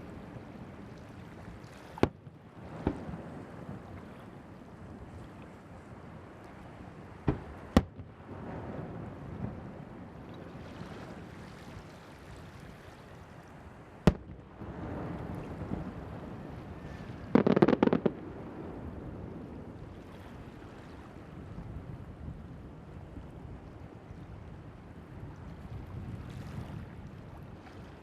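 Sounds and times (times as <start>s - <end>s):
wind: 0.0s - 28.0s
crackling firework bangs: 2.0s - 3.3s, 7.2s - 8.8s, 14.1s - 16.0s, 16.8s - 18.4s
firework bang: 7.3s - 8.1s, 14.1s - 14.4s.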